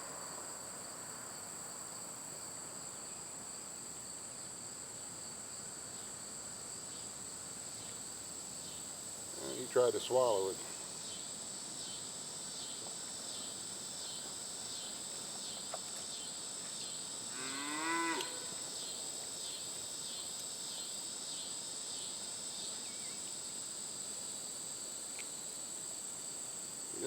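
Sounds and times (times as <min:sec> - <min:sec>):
insects buzzing: 0:00.0 - 0:27.0
pulsing insect trill: 0:08.1 - 0:27.0
rising moo-like call: 0:17.3 - 0:18.6.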